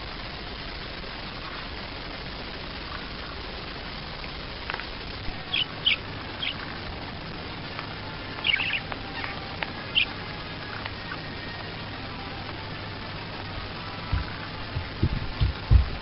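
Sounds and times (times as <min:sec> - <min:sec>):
steady hiss: 0:00.0 - 0:16.0
small bird chirping: 0:05.4 - 0:06.7, 0:08.2 - 0:11.6.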